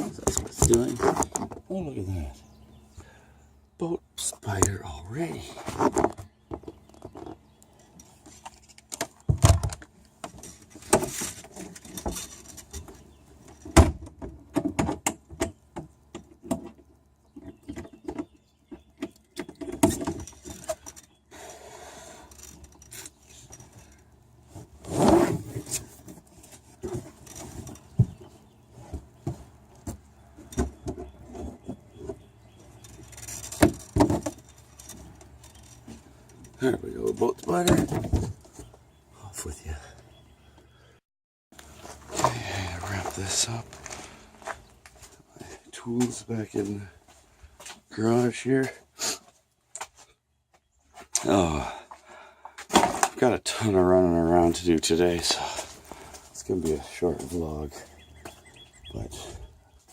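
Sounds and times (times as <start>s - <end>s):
handling knocks and clicks: 5.6s - 21.2s, 22.3s - 38.9s.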